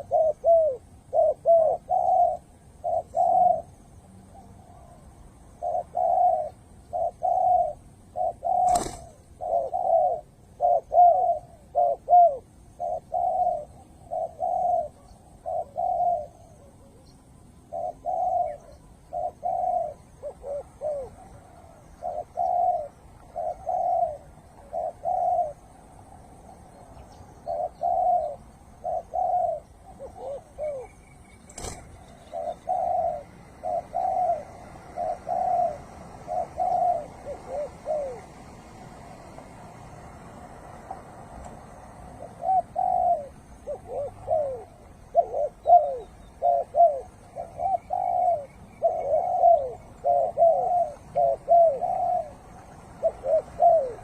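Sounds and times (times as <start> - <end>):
dove cooing: 0.0 - 54.0.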